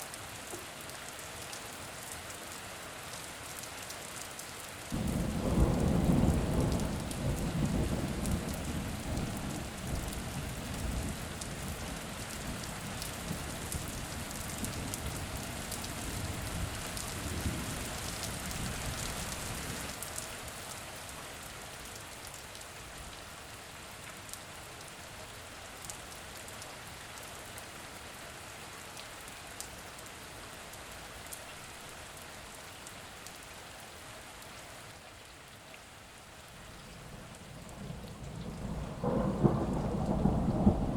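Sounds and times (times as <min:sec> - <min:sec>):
steady rain falling: 0:00.0 - 0:40.9
thunder clap rolling: 0:37.0 - 0:40.9.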